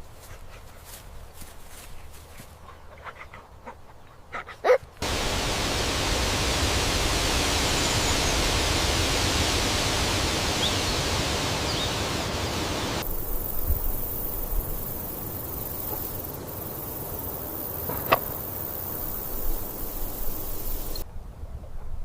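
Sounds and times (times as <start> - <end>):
steady rushing noise: 5.0 - 21.0.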